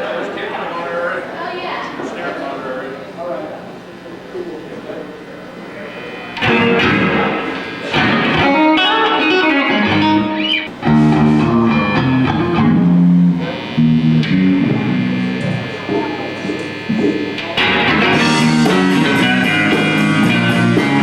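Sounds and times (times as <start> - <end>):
electric guitar playing: 5.9 - 21.0.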